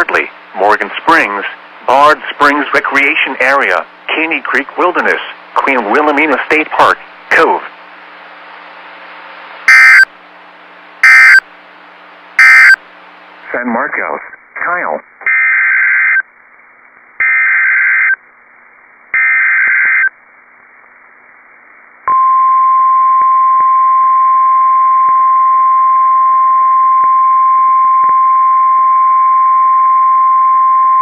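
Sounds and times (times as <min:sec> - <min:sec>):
screechy digital data bursts: 0:09.7 - 0:10.1, 0:11.0 - 0:11.4, 0:12.4 - 0:12.8, 0:15.2 - 0:16.2, 0:17.2 - 0:18.2, 0:19.2 - 0:20.1
steady alarm tone: 0:09.7 - 0:10.1, 0:11.0 - 0:11.5, 0:12.4 - 0:12.8, 0:15.2 - 0:16.2, 0:17.2 - 0:18.2, 0:19.2 - 0:20.1.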